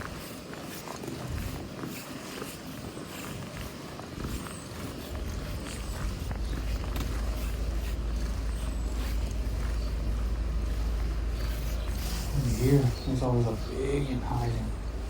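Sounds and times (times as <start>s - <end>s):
deep steady rumble: 5.1s - 15.0s
faint outdoor hiss: 5.3s - 15.0s.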